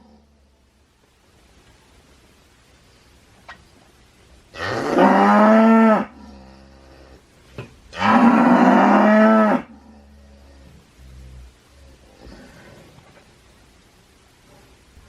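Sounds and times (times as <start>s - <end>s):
cow mooing: 4.6s - 6.8s, 7.9s - 10.4s.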